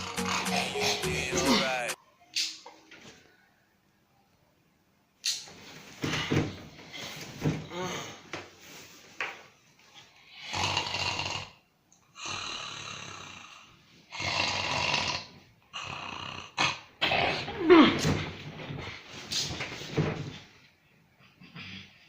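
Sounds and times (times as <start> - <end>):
man snoring: 0.0 - 2.0, 10.4 - 16.8.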